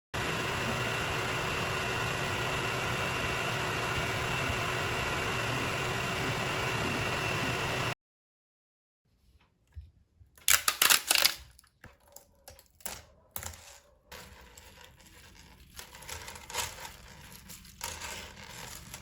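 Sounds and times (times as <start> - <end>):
faint steady whine: 0.2 - 8.0
printer cooling fans whirring: 0.2 - 8.0.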